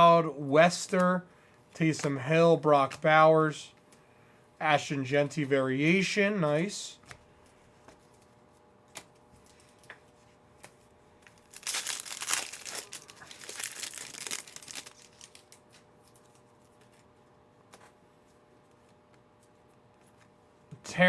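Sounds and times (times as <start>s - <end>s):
card pack wrapper tearing: 11.3s - 15.6s.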